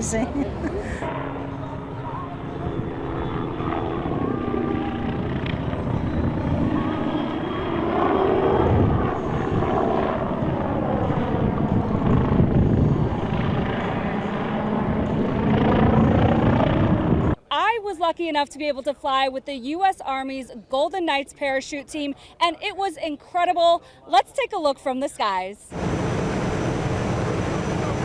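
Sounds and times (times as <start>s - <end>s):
aircraft flying past: 0.0s - 17.4s, 25.7s - 28.0s.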